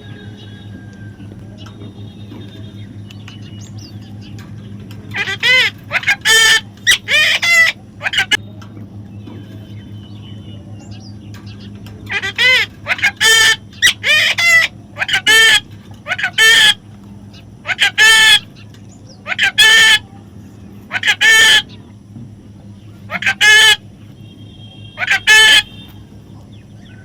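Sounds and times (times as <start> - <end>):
steady low hum: 0.0 - 27.0
parrot squawking: 5.1 - 8.4, 12.1 - 18.6, 19.2 - 20.1, 20.9 - 21.8, 23.0 - 23.9, 24.8 - 26.0.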